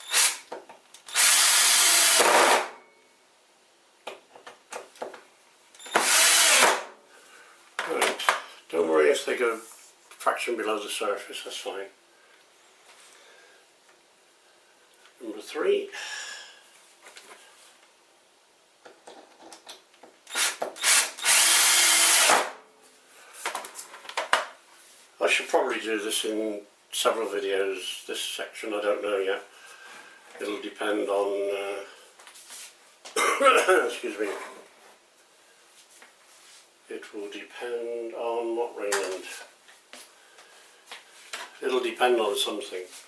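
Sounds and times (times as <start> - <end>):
power drill driving screws into wood: 0.0 - 2.8, 5.8 - 7.0, 20.3 - 22.6.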